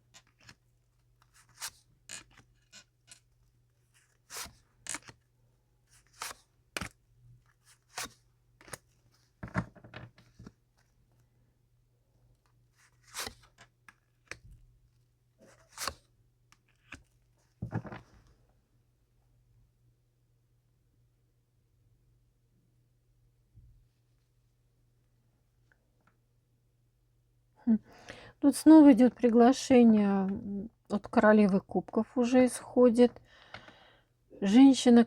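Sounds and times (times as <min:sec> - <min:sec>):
cards snapping and scraping: 0:01.2 - 0:03.3, 0:04.0 - 0:05.2, 0:06.0 - 0:07.0, 0:07.6 - 0:08.8, 0:12.8 - 0:14.4, 0:15.5 - 0:17.1.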